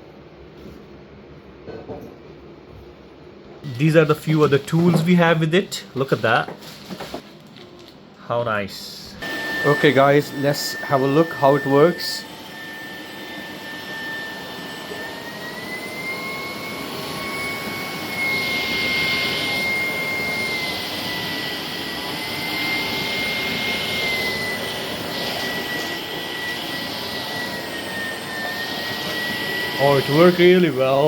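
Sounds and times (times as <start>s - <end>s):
vacuum cleaner motor whine: 3.6s - 8.0s, 9.2s - 31.0s.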